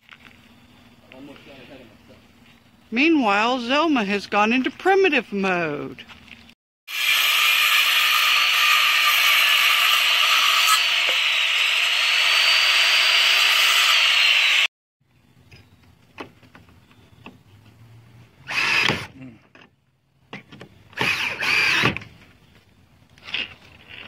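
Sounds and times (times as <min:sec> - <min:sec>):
power saw cutting wood: 0:06.9 - 0:14.7, 0:18.5 - 0:19.1.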